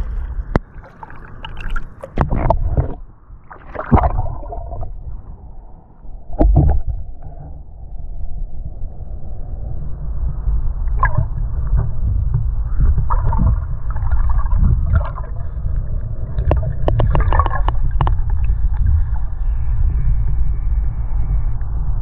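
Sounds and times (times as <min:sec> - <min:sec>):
heavy low rumble: 0:00.0 - 0:00.8, 0:02.2 - 0:22.0
water splashing and gurgling: 0:00.0 - 0:05.2, 0:10.8 - 0:19.7.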